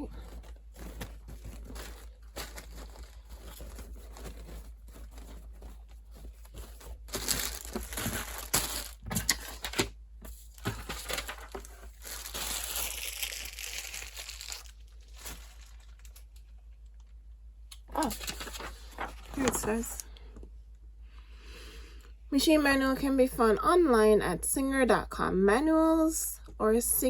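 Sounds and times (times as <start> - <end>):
packaging rustling and crackling: 0.0 - 16.6, 17.9 - 20.1.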